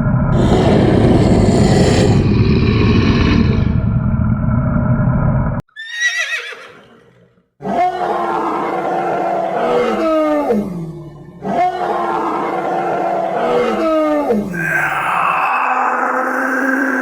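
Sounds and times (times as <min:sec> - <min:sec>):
big cat roar: 0:00.4 - 0:04.1, 0:13.4 - 0:17.0
stampede rumble: 0:00.4 - 0:05.5
horse whinny: 0:05.7 - 0:07.1.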